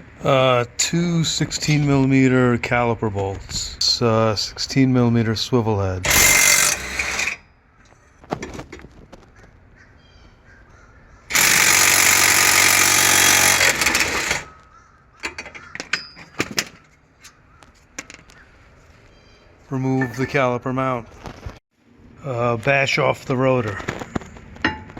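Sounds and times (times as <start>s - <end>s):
impact wrench: 6.0s - 7.4s, 11.3s - 14.5s
tools clicking and knocking: 6.1s - 7.4s, 11.3s - 14.6s, 15.2s - 18.4s.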